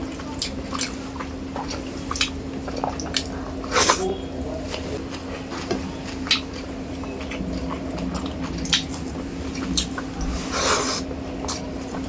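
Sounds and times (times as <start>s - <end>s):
wet chewing: 0.0s - 12.0s
mouth clicks and smacks: 0.4s - 4.1s, 6.2s - 10.1s.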